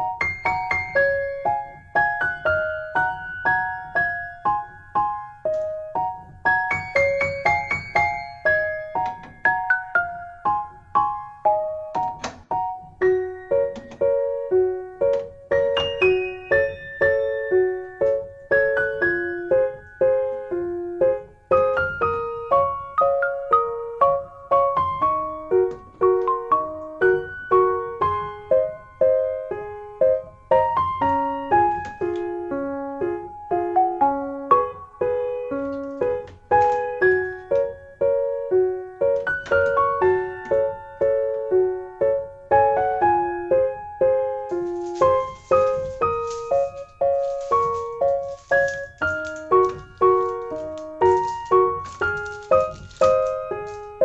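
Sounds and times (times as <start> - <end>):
soft piano notes: 0.0 - 54.0.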